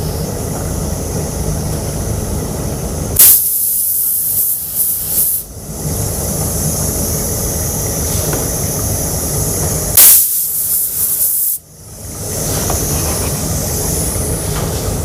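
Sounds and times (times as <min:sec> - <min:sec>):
paint spray gun hissing: 0:03.2 - 0:05.5, 0:07.0 - 0:11.6
air blast: 0:10.0 - 0:11.6.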